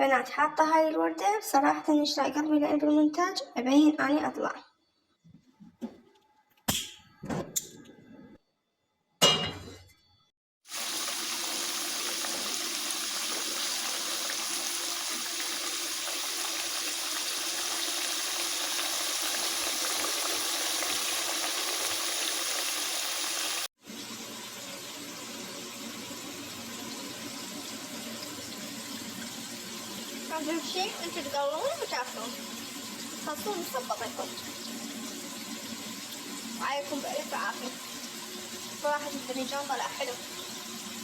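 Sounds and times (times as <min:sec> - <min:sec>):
vegetables sizzling in hot oil: 0:10.7 - 0:23.7.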